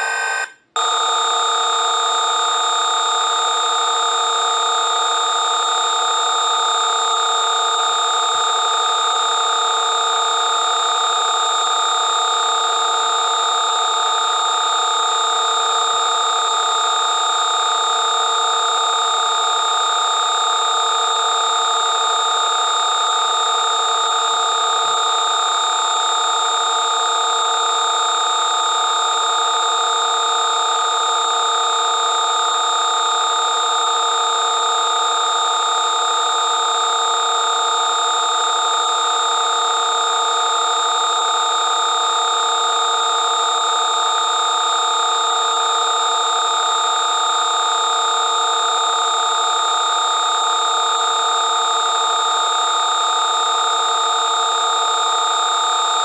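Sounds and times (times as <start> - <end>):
chord of steady electronic tones: 0.0 - 1.0.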